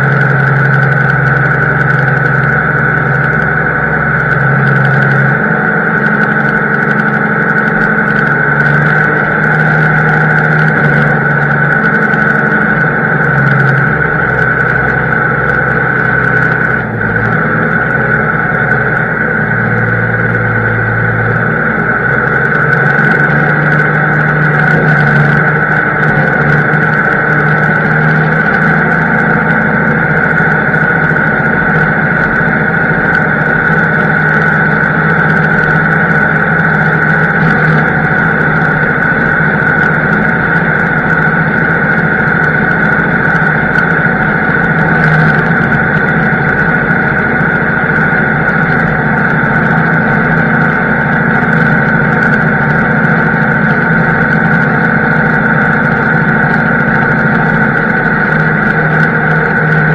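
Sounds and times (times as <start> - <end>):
high-pitched whine: 0.0 - 59.9
tractor engine running under load: 0.0 - 59.9.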